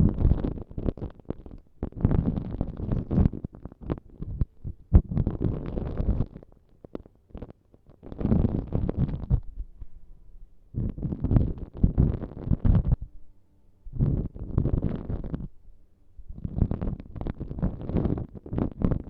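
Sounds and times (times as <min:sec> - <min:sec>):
rubbing and scratching on microphone: 0:00.0 - 0:09.6, 0:10.8 - 0:13.1, 0:13.9 - 0:15.5, 0:16.3 - 0:19.0.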